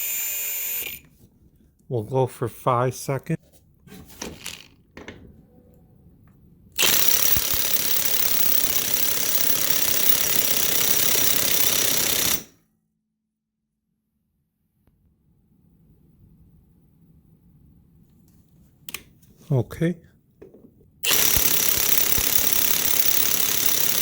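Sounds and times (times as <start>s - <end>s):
impact wrench hammering: 6.8s - 12.5s, 21.0s - 24.0s.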